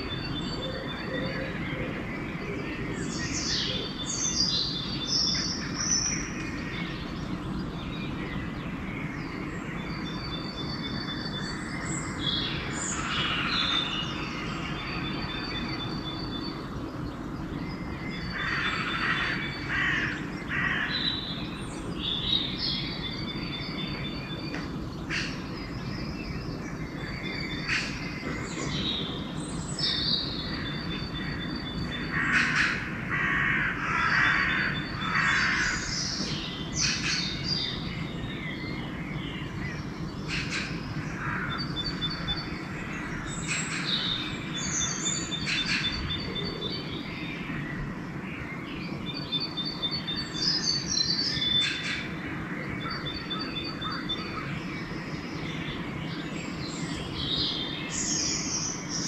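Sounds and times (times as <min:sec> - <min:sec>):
songbirds trilling: 0:00.0 - 0:59.0
crows cawing: 0:18.3 - 0:21.1, 0:32.1 - 0:35.9, 0:40.3 - 0:41.7.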